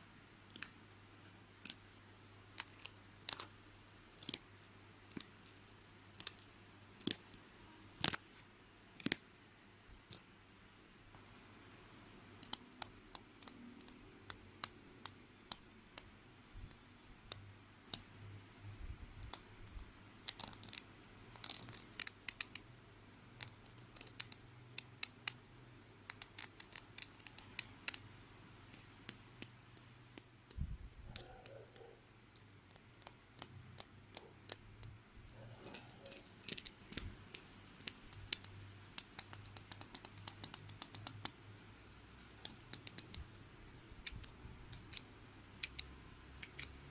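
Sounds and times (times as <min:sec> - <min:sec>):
sharp clicks and taps: 0:28.7 - 0:35.0, 0:35.6 - 0:41.4, 0:42.4 - 0:43.3, 0:44.0 - 0:46.8.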